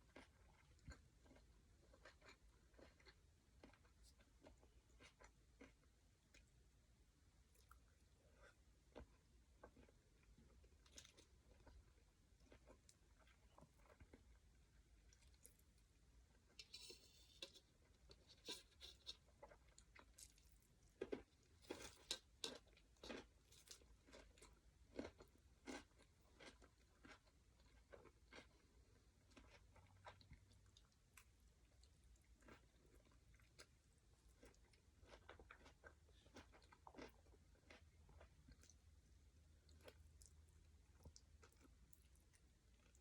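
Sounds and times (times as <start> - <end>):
person chewing crunchy salad: 0.0 - 6.5, 16.5 - 43.0.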